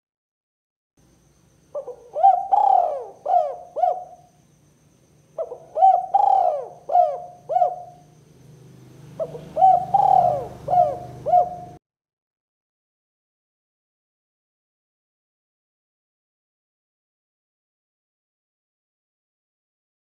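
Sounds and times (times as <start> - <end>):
faint low hum: 1.0 - 11.8
dove cooing: 1.7 - 4.4, 5.4 - 11.8.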